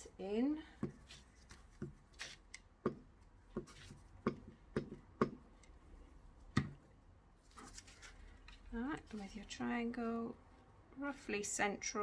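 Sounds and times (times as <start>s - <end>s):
sharp taps and clicks on paper: 0.8s - 5.8s.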